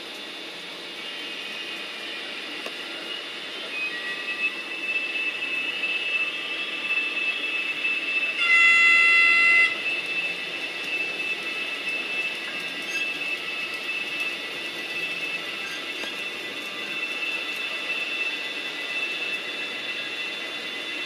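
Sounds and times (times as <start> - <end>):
model locomotive engine sound: 0.0 - 21.0
locomotive horn blast: 8.4 - 9.9.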